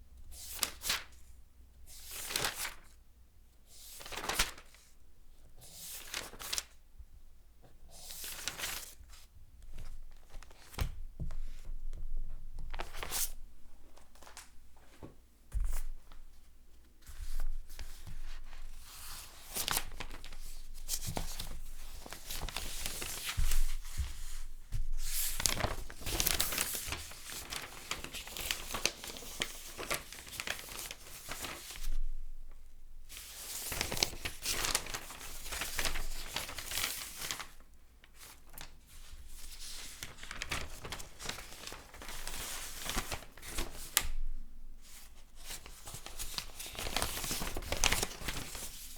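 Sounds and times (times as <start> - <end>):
paper pages turning: 2.2 - 2.8, 4.0 - 4.7, 5.9 - 6.7, 19.0 - 32.0, 33.2 - 37.6, 39.4 - 44.1, 45.5 - 48.9.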